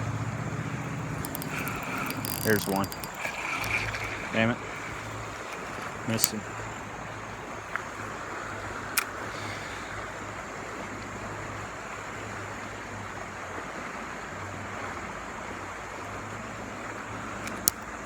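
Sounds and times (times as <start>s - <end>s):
sharp click: 1.2s - 4.1s, 17.4s - 17.9s.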